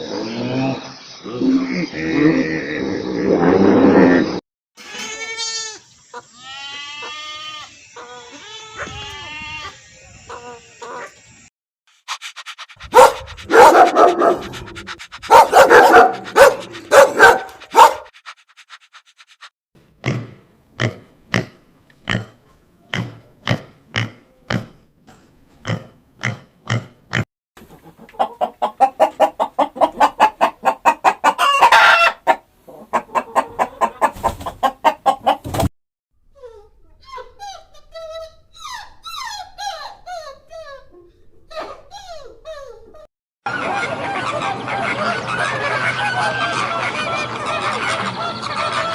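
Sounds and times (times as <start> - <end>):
farm animals calling: 12.2 - 18.0.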